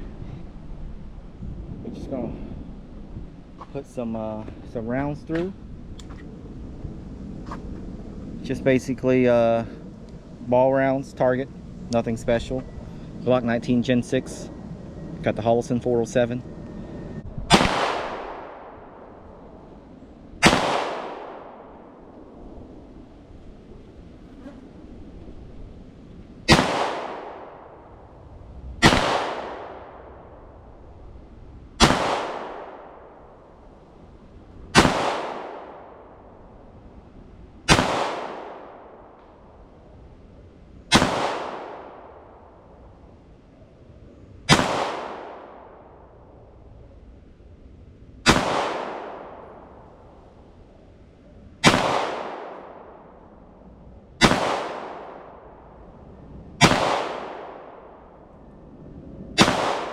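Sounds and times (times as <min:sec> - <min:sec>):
pistol shots with echo: 0:17.5 - 0:19.1, 0:20.4 - 0:22.0, 0:26.5 - 0:27.8, 0:28.8 - 0:30.3, 0:31.8 - 0:33.3, 0:34.7 - 0:36.2, 0:37.6 - 0:39.2, 0:40.9 - 0:42.5, 0:44.5 - 0:45.9, 0:48.2 - 0:50.0, 0:51.6 - 0:53.3, 0:54.2 - 0:55.7, 0:56.6 - 0:58.2, 0:59.4 - 0:59.9.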